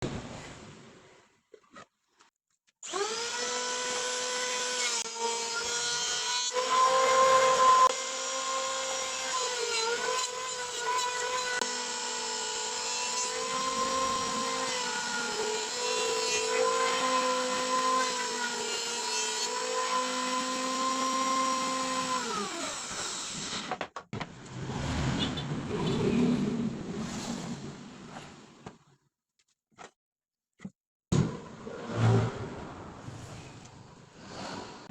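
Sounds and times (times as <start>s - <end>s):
power tool motor whine: 2.8s - 23.7s.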